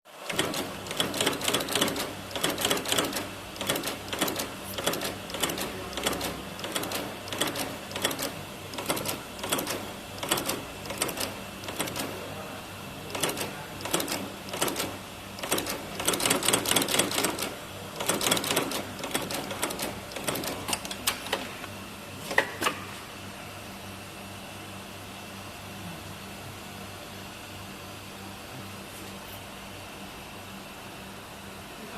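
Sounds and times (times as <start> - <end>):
steady machine hum: 0.1 - 31.9
sewing machine stitching: 0.2 - 12.2, 13.1 - 21.4.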